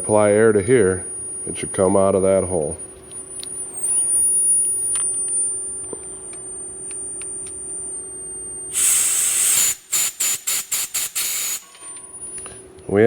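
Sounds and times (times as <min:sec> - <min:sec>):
compressed air hiss from blow gun: 0:08.7 - 0:11.7.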